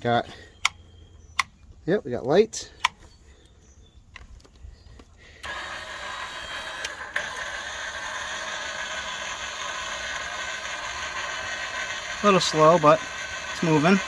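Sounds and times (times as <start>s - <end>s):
electric jack motor running: 5.4s - 14.0s.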